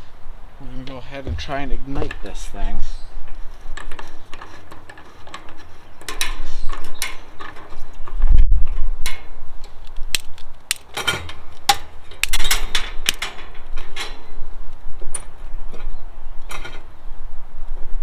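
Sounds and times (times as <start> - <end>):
low thump: 1.3 - 2.7
heater clicks and metallic rattling: 9.8 - 13.8.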